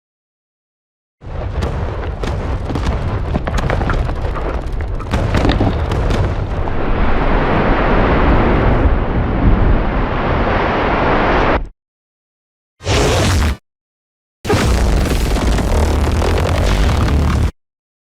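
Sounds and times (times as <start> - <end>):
monster roar with crackles: 1.4 - 7.5, 14.5 - 17.5.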